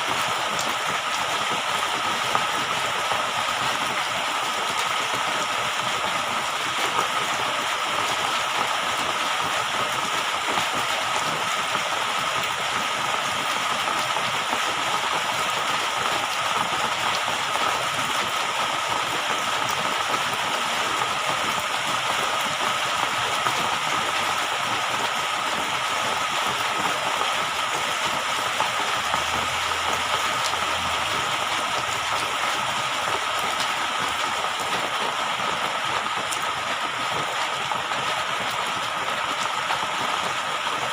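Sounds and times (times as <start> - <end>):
water rushing: 26.6 - 40.6.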